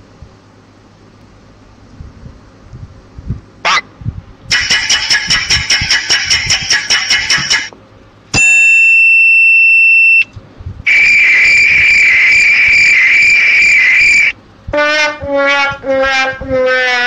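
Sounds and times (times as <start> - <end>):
harsh buzzer tone: 3.6 - 3.8, 4.5 - 7.7, 8.3 - 10.3, 10.9 - 16.8.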